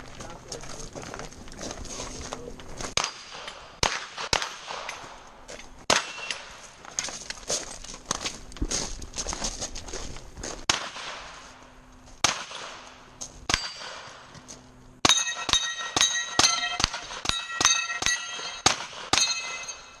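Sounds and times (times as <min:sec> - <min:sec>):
gunshots: 0:03.0 - 0:05.1, 0:05.9 - 0:06.6, 0:10.7 - 0:11.5, 0:12.2 - 0:12.9, 0:15.0 - 0:19.5
steel targets ringing: 0:05.9 - 0:06.6, 0:13.5 - 0:14.3, 0:15.0 - 0:20.0.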